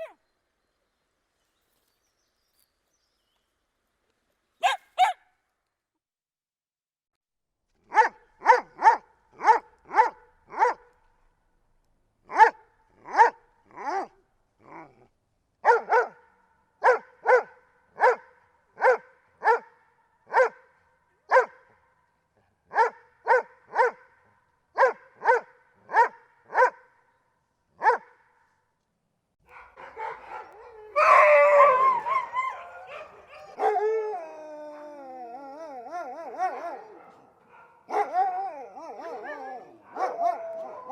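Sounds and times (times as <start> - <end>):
dog barking: 4.6 - 5.3, 7.9 - 10.9, 12.3 - 14.2, 15.6 - 21.8, 22.7 - 27.0, 27.8 - 28.4, 29.5 - 33.8, 36.4 - 40.4
dog howling: 30.0 - 40.9.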